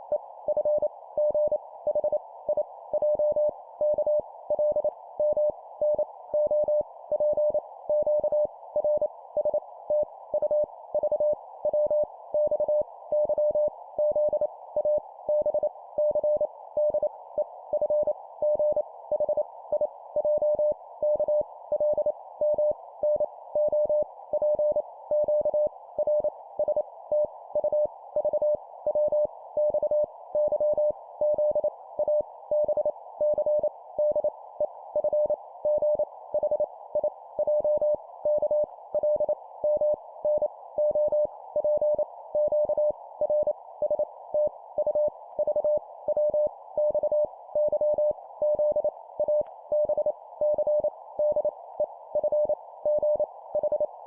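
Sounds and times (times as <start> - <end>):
morse code beeps: 37.4 - 51.5, 52.2 - 53.9.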